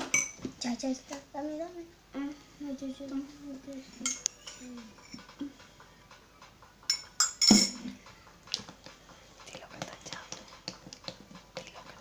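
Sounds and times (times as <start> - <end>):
utensils clinking against a bowl: 0.0 - 0.5, 3.9 - 12.0.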